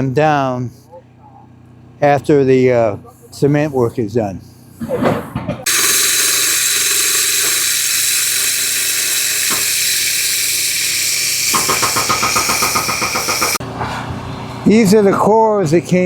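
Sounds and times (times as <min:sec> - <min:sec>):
core drill grinding into concrete: 0:05.7 - 0:13.6
rhythmic chattering grind: 0:05.7 - 0:13.6.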